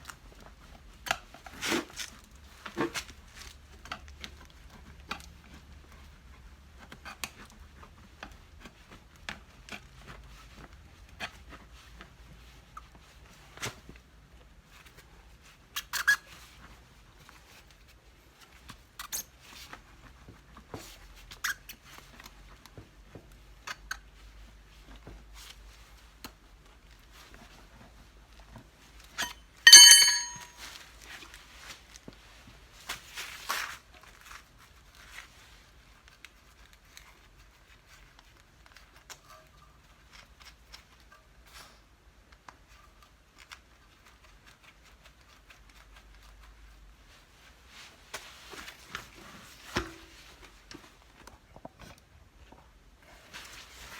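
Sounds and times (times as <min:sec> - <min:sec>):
loud high ringing: 0:29.7 - 0:30.5.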